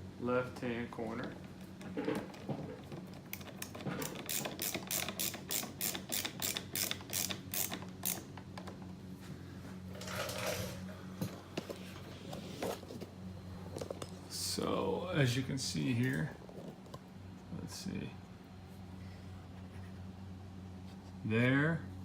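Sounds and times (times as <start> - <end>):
screwdriver ratchet clicking: 3.3 - 8.3.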